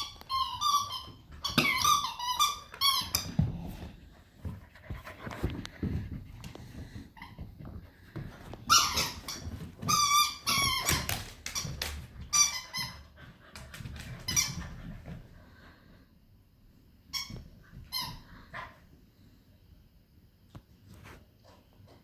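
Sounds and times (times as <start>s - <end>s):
high-pitched dog squeaks: 0.0s - 3.3s
dogs scuffling: 0.0s - 15.4s.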